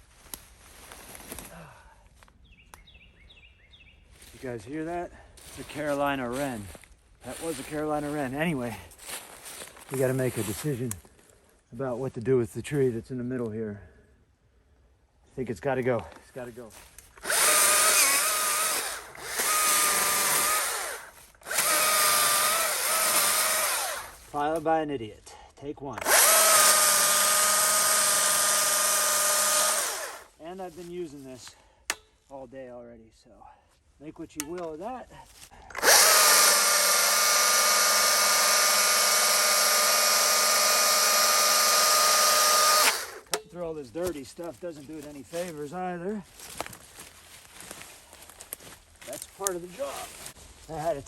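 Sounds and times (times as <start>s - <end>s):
saw cutting into tree: 17.1s - 24.4s, 26.0s - 30.4s, 35.7s - 43.4s.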